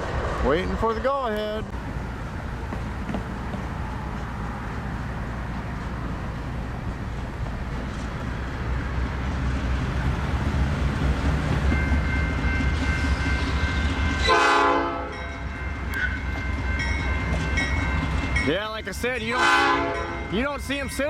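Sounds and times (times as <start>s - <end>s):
diesel locomotive rumbling: 0.0s - 21.0s
train horn blast: 14.0s - 15.4s, 19.3s - 20.3s.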